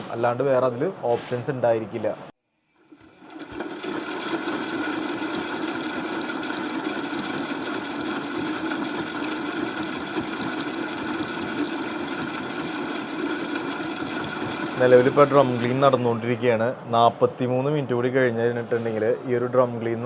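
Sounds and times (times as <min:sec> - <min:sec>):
washing machine motor hum: 0:02.7 - 0:16.7
water churning in drum: 0:02.9 - 0:16.5.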